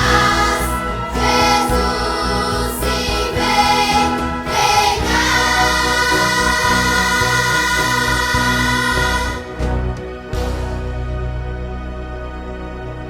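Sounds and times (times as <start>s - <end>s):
children's choir singing: 0.0s - 9.8s
instrumental accompaniment: 0.0s - 13.0s.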